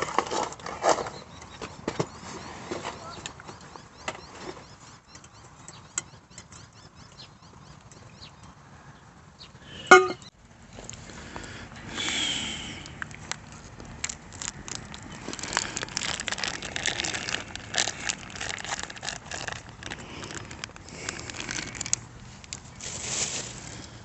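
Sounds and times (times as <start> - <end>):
campfire crackling and popping: 10.8 - 22.7.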